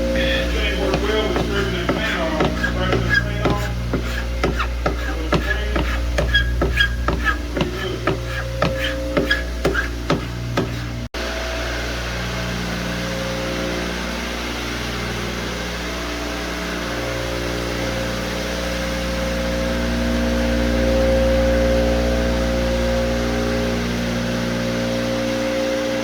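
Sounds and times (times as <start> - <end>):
floor buffer motor hum: 0.0 - 12.0.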